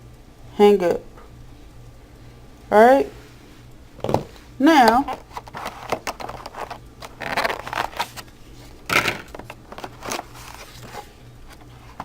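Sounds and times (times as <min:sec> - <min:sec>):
rustling of paper and plastic: 0:05.0 - 0:12.0.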